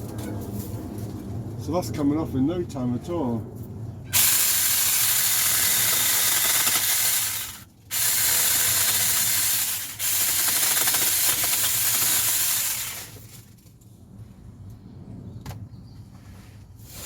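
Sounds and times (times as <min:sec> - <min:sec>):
electric chainsaw chain whirring: 0:04.2 - 0:13.5.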